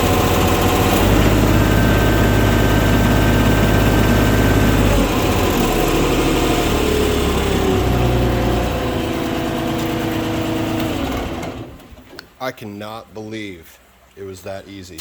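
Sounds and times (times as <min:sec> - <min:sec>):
diesel engine running: 0:00.0 - 0:12.0.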